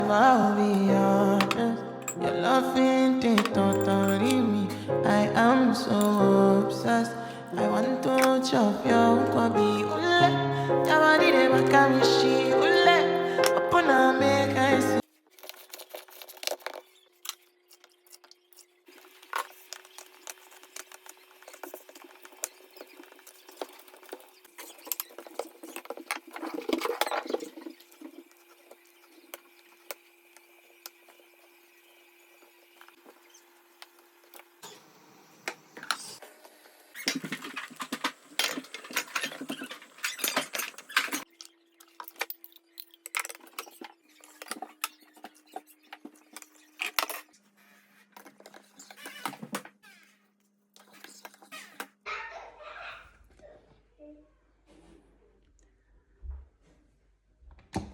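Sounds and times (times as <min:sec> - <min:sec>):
utensils tapping and scraping: 0:00.7 - 0:02.3, 0:03.2 - 0:04.5, 0:05.9 - 0:06.4, 0:15.3 - 0:31.6.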